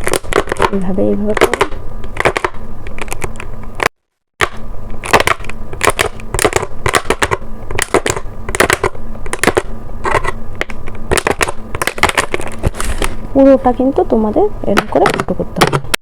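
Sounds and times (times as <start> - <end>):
plastic bottle crackling: 0.0 - 3.4.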